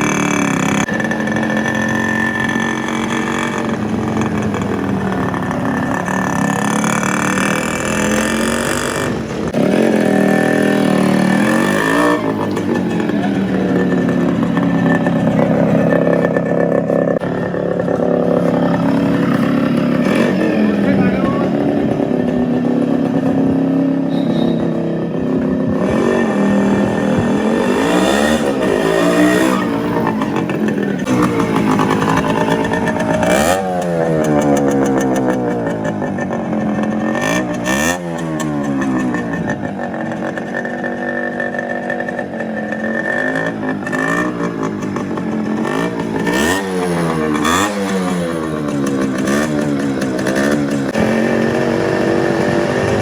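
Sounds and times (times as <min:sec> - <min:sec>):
two-stroke engine revving: 0:00.0 - 0:53.0.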